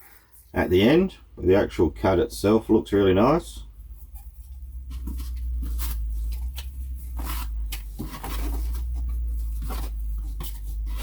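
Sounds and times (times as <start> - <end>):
steady low hum: 0.0 - 11.0
packaging rustling and scraping: 3.8 - 11.0.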